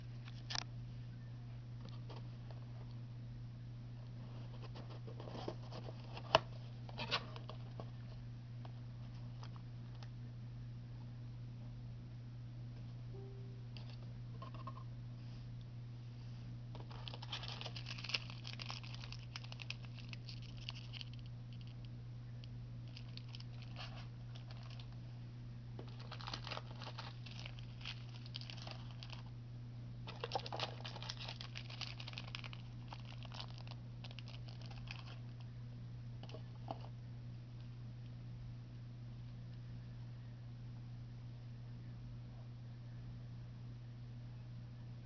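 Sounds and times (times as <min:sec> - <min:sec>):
steady low hum: 0:00.0 - 0:45.0
paper and plastic crinkling: 0:04.2 - 0:08.0, 0:16.8 - 0:21.8, 0:22.8 - 0:25.0, 0:25.8 - 0:29.3, 0:30.1 - 0:35.4.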